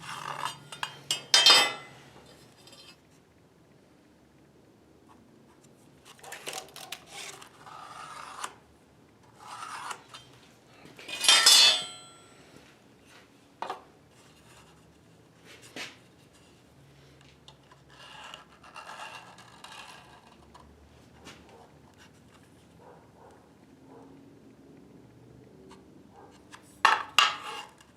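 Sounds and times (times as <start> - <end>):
scraping and rubbing of tools: 0.0 - 3.1, 6.0 - 8.6, 9.2 - 12.4, 17.5 - 22.6, 26.5 - 27.9
metallic clatter: 0.1 - 2.0, 11.1 - 12.2.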